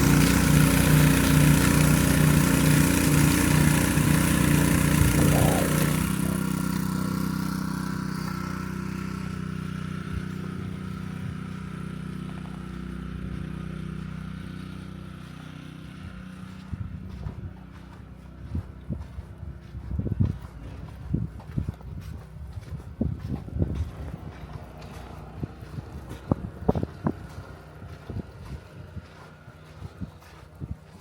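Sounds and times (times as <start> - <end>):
vehicle engine running: 0.0 - 31.0
footsteps in snow: 16.5 - 31.0.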